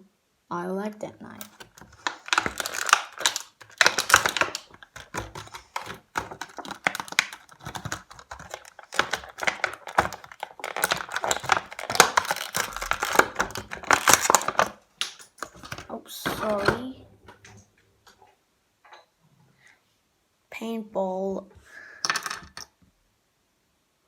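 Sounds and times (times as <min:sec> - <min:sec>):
plastic toy pieces clicking: 0:01.4 - 0:16.6, 0:22.0 - 0:22.7.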